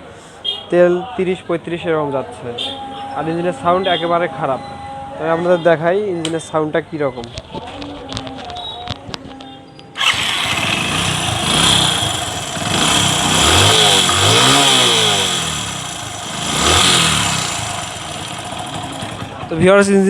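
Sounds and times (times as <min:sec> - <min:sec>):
motorcycle engine revving: 0:10.0 - 0:19.8
harsh engine rattling: 0:10.0 - 0:19.9.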